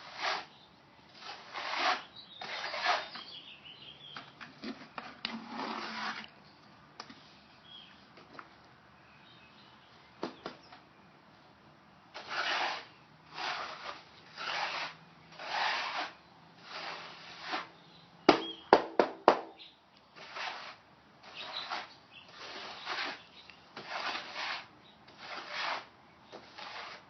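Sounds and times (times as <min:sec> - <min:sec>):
trowel scraping grout: 0:00.0 - 0:03.4, 0:04.6 - 0:06.4, 0:12.2 - 0:17.8, 0:20.2 - 0:27.0.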